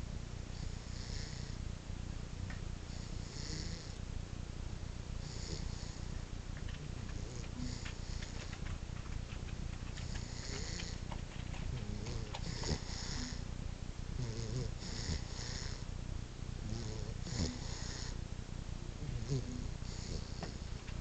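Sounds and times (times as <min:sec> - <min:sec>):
puppy snoring: 0:00.5 - 0:01.6, 0:02.9 - 0:04.0, 0:05.2 - 0:09.1, 0:09.9 - 0:13.5, 0:14.2 - 0:15.9, 0:16.6 - 0:18.2, 0:19.0 - 0:20.9.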